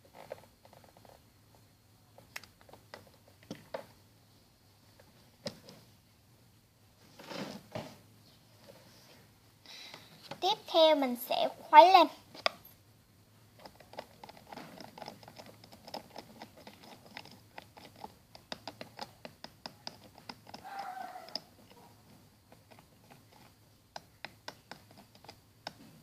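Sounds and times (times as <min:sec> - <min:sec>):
stirrer scraping container: 0:13.6 - 0:25.5.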